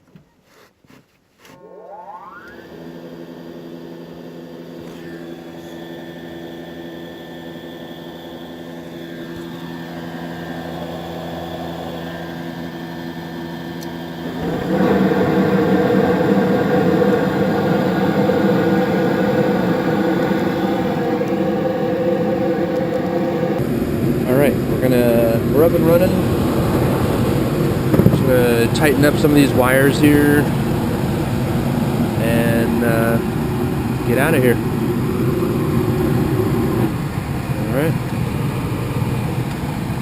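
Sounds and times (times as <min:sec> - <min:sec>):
motor whine and hum: 0:01.5 - 0:40.0
rushing air: 0:14.2 - 0:38.8.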